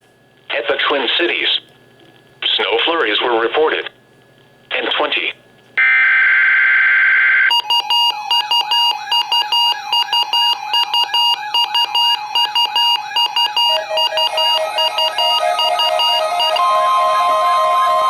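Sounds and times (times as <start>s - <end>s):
buzzing alert data burst: 11.2s - 18.0s
electronic alert melody: 12.6s - 18.0s
low tone: 13.4s - 18.0s.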